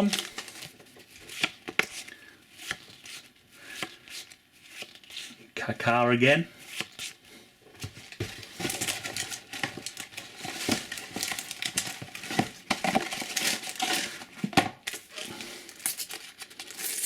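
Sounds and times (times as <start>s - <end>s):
sticker pack wrapper crinkling: 15.7s - 17.0s.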